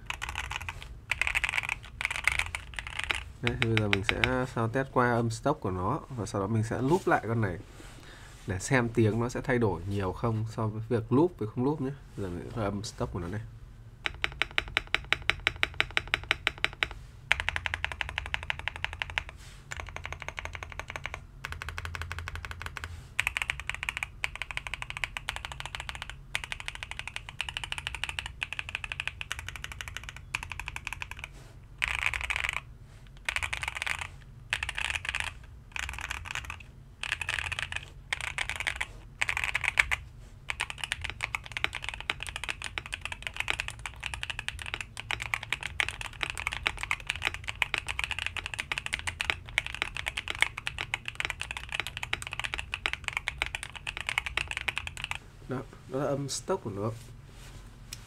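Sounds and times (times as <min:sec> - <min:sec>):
mechanical keyboard typing: 0:00.0 - 0:04.4, 0:14.0 - 0:55.2.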